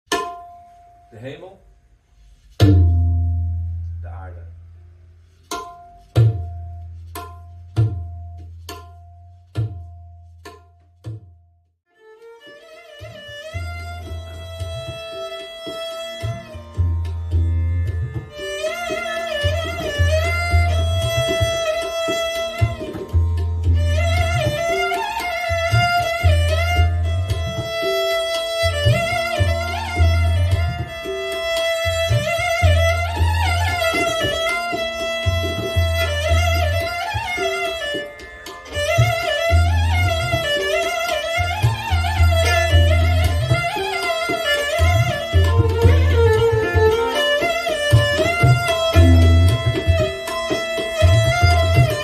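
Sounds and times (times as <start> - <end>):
tabla strokes: 0.1 - 52.0
bowed string melody: 11.8 - 52.0
wavering melodic line: 48.4 - 50.2.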